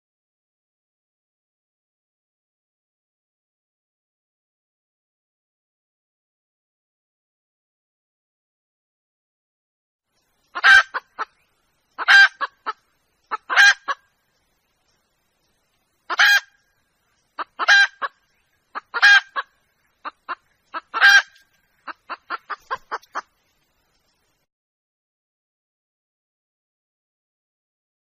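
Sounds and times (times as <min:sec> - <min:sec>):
hen calling harshly: 0:10.6 - 0:11.4, 0:12.0 - 0:14.0, 0:16.1 - 0:16.6, 0:17.4 - 0:23.3.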